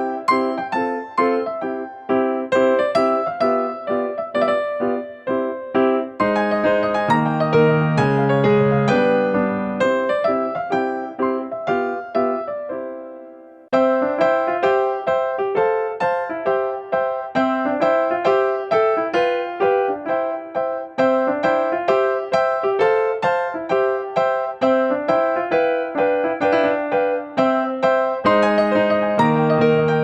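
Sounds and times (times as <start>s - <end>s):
piano music: 0.0s - 30.0s.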